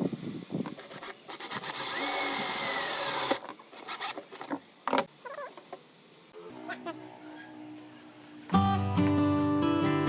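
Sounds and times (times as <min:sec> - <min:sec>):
power tool whining: 0:00.8 - 0:04.5.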